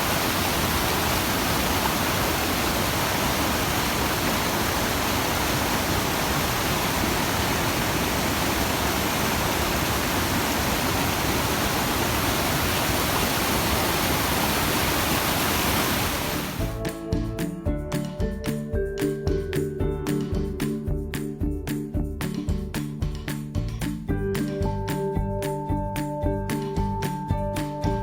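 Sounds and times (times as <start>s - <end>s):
waterfall roaring: 0.0s - 16.6s
music: 16.6s - 28.0s.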